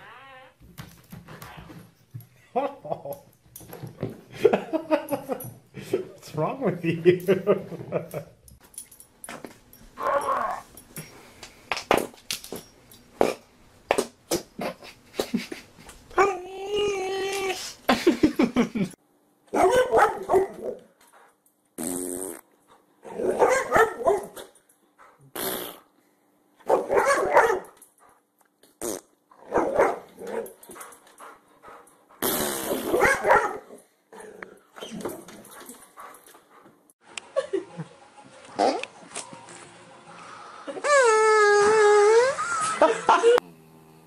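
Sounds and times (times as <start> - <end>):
dogs barking and growling: 10.0 - 10.8, 19.5 - 20.9, 23.0 - 25.3, 26.6 - 27.8, 29.4 - 36.3
fart sounds: 21.8 - 22.5, 25.3 - 25.9, 28.8 - 29.2, 32.2 - 33.0.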